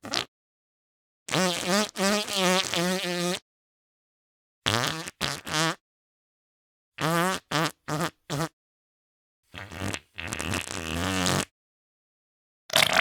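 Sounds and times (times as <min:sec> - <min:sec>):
fart sound effects: 0:09.6 - 0:11.5, 0:12.7 - 0:13.0.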